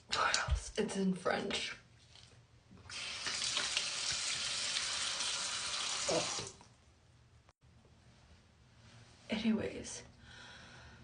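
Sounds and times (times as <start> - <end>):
tap water running into sink: 2.9 - 6.6.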